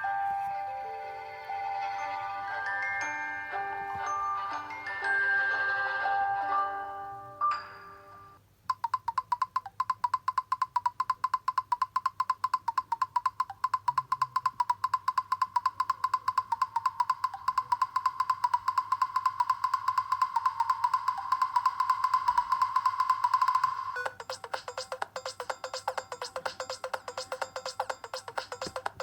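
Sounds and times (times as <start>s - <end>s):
wood-block-like ringtone clicks: 8.7s - 29.0s.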